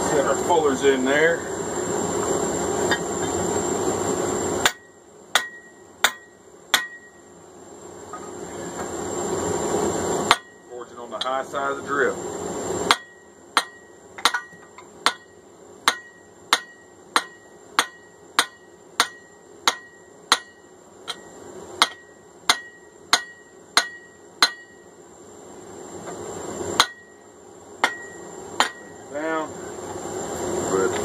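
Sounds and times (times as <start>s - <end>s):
hammer striking steel on anvil: 4.6s - 7.2s, 10.3s - 11.4s, 12.9s - 24.9s, 26.8s - 27.2s, 27.8s - 29.0s.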